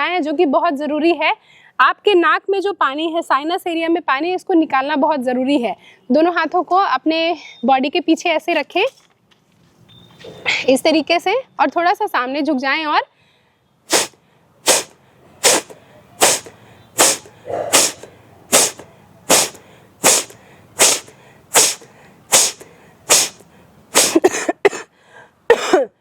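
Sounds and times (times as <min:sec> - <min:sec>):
woman exhaling through nose: 0:13.9 - 0:24.2.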